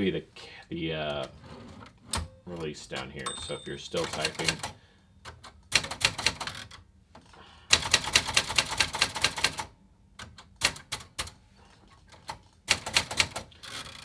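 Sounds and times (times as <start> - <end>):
typewriter key strikes: 3.2 - 6.6.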